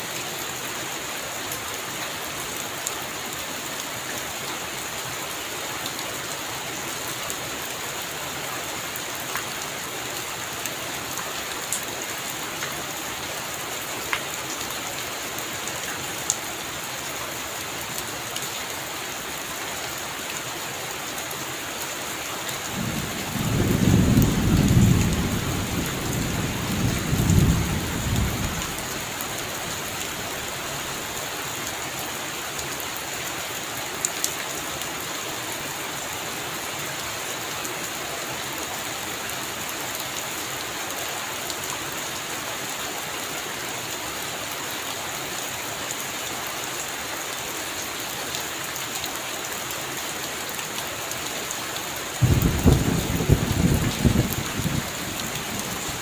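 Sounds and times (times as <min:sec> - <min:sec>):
heavy rain falling: 0:00.0 - 0:56.0
thunder rumbling: 0:22.8 - 0:28.8, 0:52.2 - 0:56.0.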